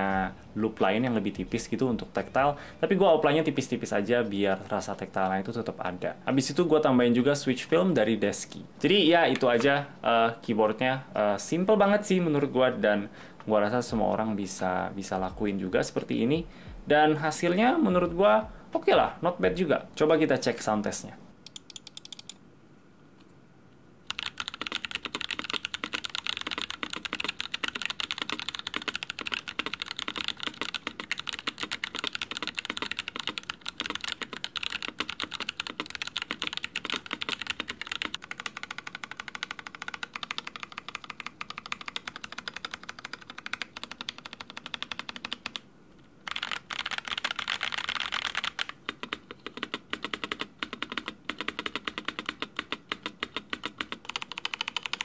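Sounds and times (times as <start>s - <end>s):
mechanical keyboard typing: 21.5s - 22.4s, 24.0s - 45.6s, 46.2s - 55.0s.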